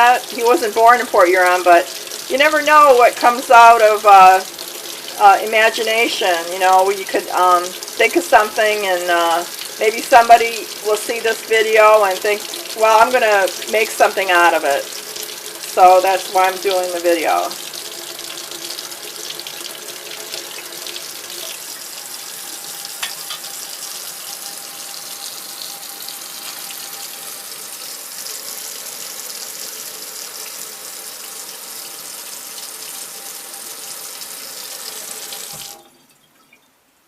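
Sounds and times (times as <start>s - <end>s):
tap water running: 0.0s - 36.7s.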